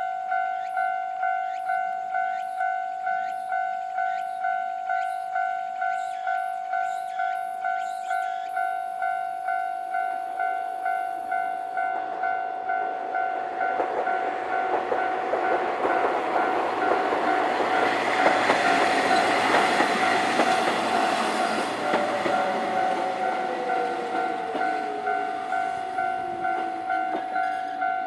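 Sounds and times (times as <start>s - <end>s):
level-crossing warning bell: 0.0s - 28.0s
train wheels clattering on rails: 11.8s - 28.0s.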